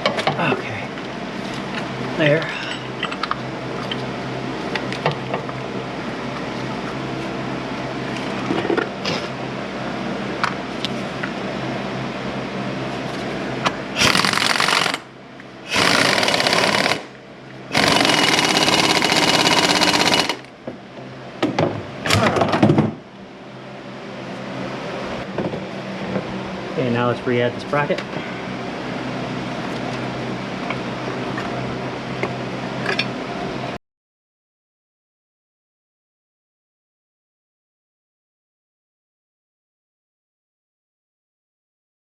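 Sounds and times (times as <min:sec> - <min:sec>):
impact wrench running bolts: 0:14.0 - 0:15.1, 0:15.7 - 0:20.5.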